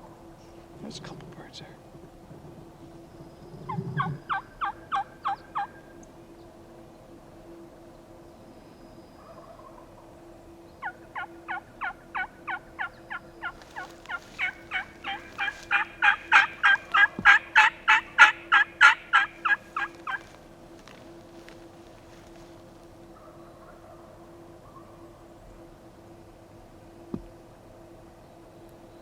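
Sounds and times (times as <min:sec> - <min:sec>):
turkey yelps: 0:03.7 - 0:05.8, 0:10.8 - 0:20.3.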